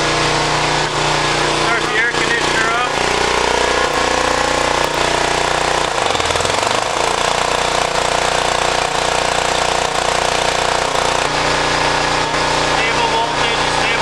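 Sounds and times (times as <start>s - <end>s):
generator running: 0.0s - 14.0s.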